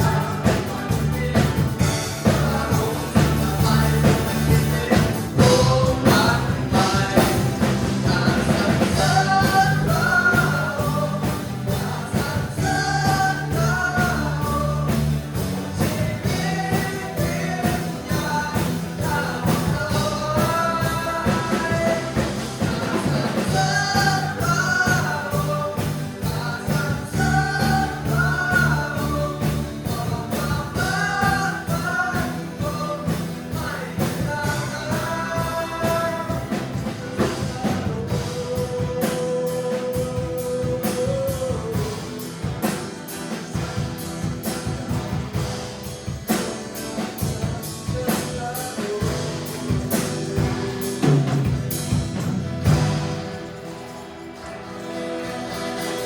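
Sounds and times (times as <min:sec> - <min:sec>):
person singing: 0:00.0 - 0:53.9
worship band playing: 0:00.0 - 0:56.0.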